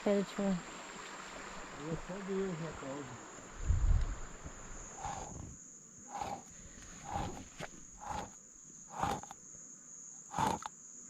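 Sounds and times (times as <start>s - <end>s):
insects buzzing: 0.0s - 11.0s
soft footsteps: 6.1s - 8.4s.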